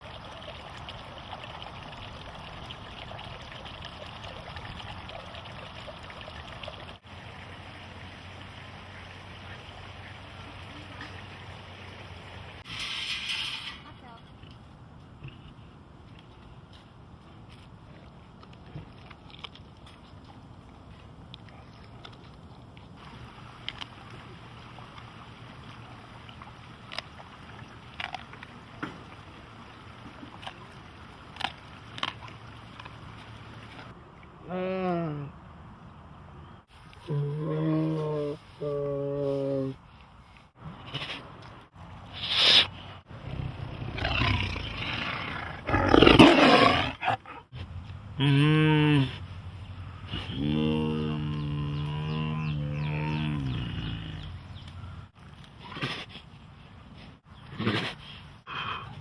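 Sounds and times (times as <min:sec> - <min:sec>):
running water: 0:00.0 - 0:12.8, 0:23.0 - 0:34.0.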